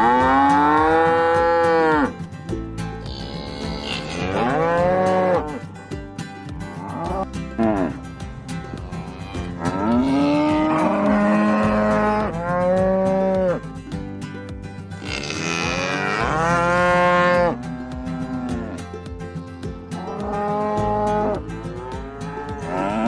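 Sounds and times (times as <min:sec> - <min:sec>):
cows mooing: 0:00.0 - 0:02.1, 0:03.0 - 0:05.6, 0:06.6 - 0:08.0, 0:08.8 - 0:13.6, 0:15.0 - 0:18.9, 0:20.0 - 0:23.0.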